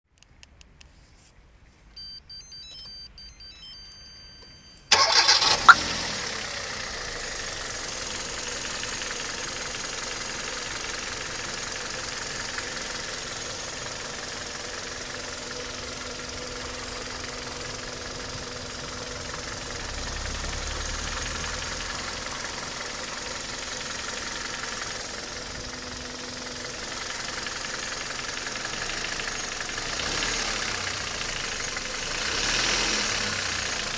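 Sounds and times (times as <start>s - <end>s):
faint high tones: 2.0s - 5.0s
car engine starting and idling: 3.6s - 33.9s.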